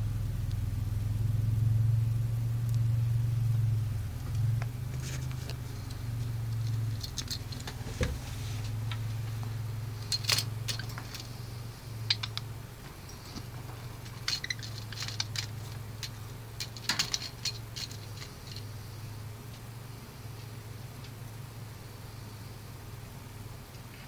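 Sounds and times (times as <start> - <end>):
steady low hum: 0.0 - 24.0
toy truck clicking and rattling: 6.5 - 7.8, 10.0 - 11.4, 14.0 - 18.7.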